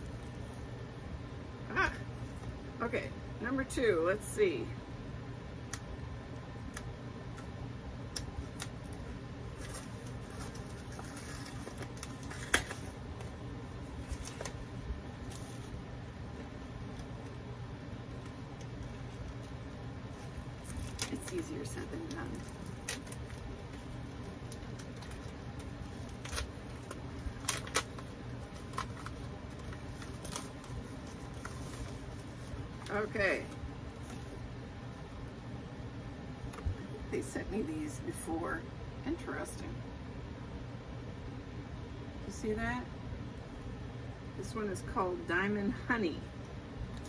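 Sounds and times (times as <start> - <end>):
steady low hum: 0.0 - 47.0
plastic packaging clicking and crinkling: 9.6 - 13.4, 20.6 - 33.0.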